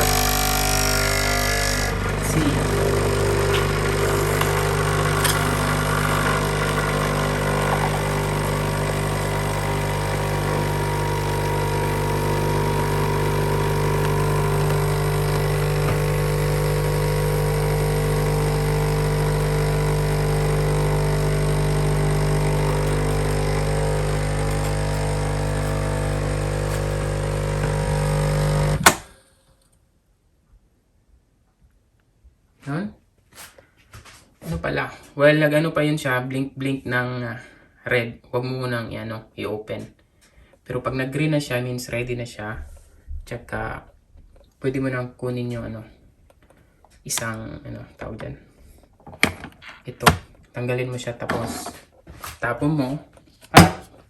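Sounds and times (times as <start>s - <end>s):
coffee machine pump buzzing: 0.0s - 29.1s, 53.6s - 53.9s
coffee machine click: 1.9s - 17.8s, 18.4s - 29.0s.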